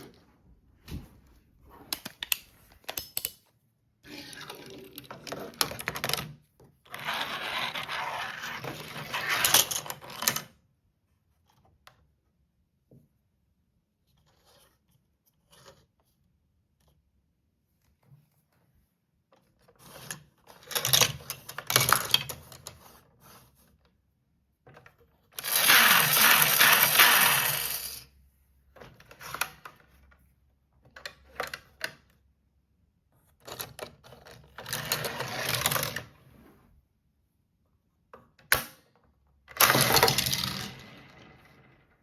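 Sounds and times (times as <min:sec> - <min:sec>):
plastic toy parts clicking: 0:01.9 - 0:03.5, 0:25.4 - 0:28.0.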